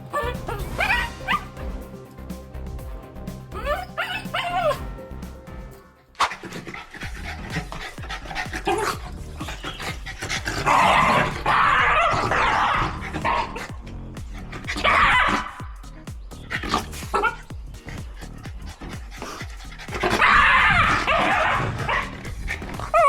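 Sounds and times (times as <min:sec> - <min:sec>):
dog barking: 0:03.7 - 0:04.8, 0:07.5 - 0:13.8, 0:14.5 - 0:15.7, 0:19.9 - 0:23.0.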